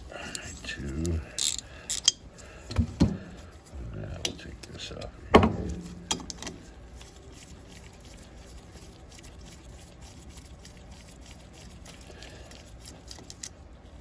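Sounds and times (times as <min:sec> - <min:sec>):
low background hum: 0:00.0 - 0:14.0
small metal parts clicking: 0:00.3 - 0:02.2, 0:12.0 - 0:13.6.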